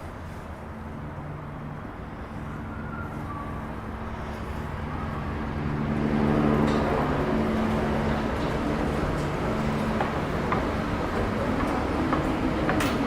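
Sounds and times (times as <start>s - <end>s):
street background noise: 0.0s - 13.0s.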